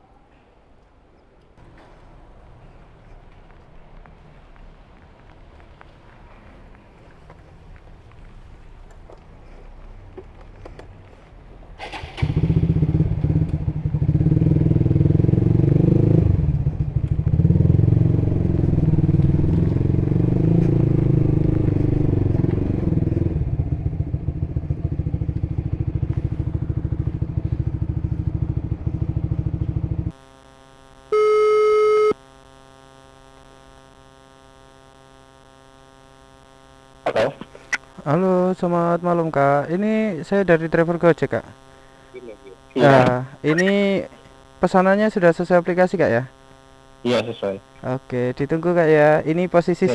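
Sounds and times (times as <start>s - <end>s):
motorcycle engine running: 11.9s - 30.8s
faint hum: 16.3s - 49.9s
short electronic beep: 31.1s - 32.2s.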